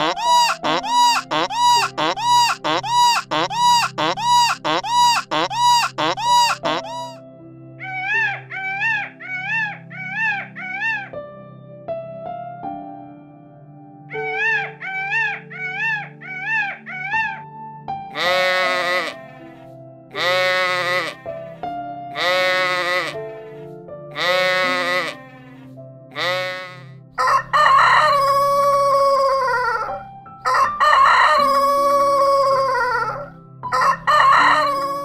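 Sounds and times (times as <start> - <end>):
goat bleating: 0.0 - 7.2, 18.2 - 21.3, 22.2 - 23.6, 24.2 - 25.6, 26.2 - 26.9
background music: 0.0 - 35.0
rooster crowing: 27.2 - 35.0.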